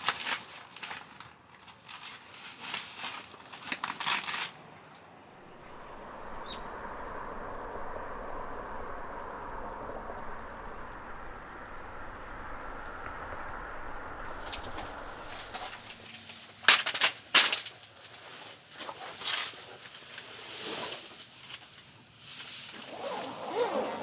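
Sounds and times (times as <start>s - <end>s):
steady rushing noise: 5.3s - 16.2s.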